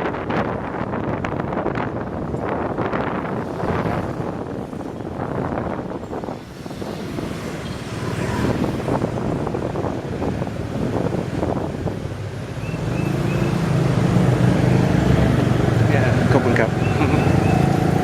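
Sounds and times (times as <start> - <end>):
road noise: 0.0 - 18.0
wind buffeting microphone: 0.0 - 18.0
motorbike engine: 13.0 - 18.0.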